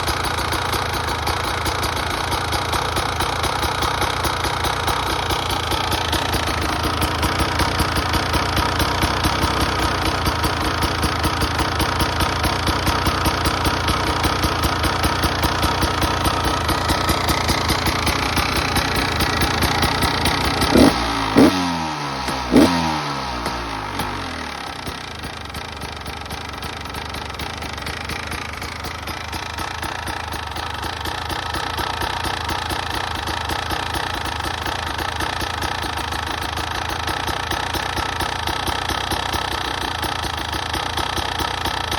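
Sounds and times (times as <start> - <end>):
two-stroke engine idling: 0.0 - 41.9
engine throttle blips: 18.4 - 24.4.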